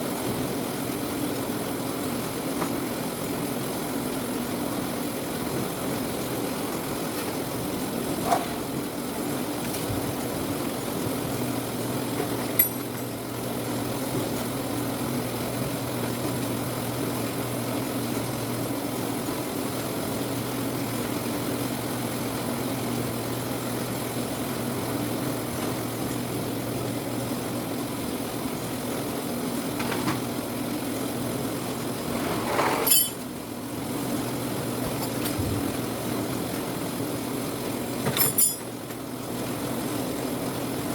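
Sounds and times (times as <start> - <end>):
sorting machine humming: 0.0 - 40.9
sharp knocks and clinks: 38.1 - 38.7.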